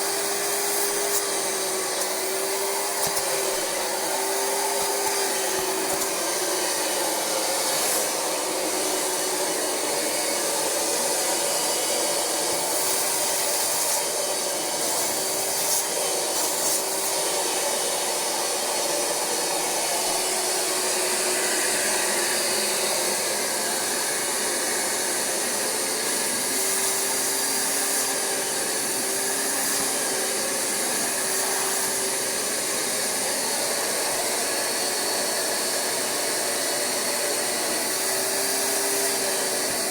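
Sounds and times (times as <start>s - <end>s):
carpet cleaner suction humming: 0.0s - 39.9s.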